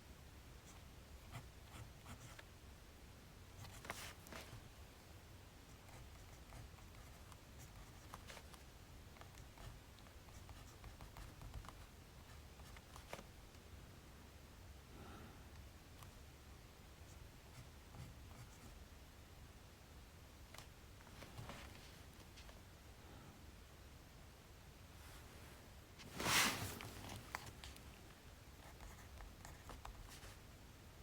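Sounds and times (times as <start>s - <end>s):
paper rustling: 26.0s - 28.0s.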